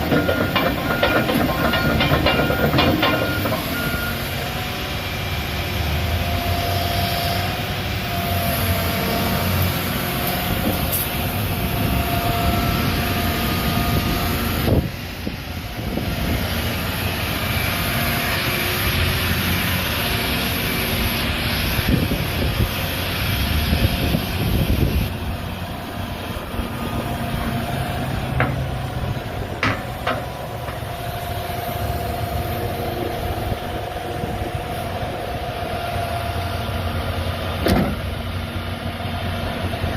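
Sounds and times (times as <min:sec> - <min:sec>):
sharp metal knocks and clanks: 0:00.0 - 0:03.9, 0:28.4 - 0:28.8, 0:29.6 - 0:30.8
excavator engine and hydraulics: 0:00.0 - 0:39.9.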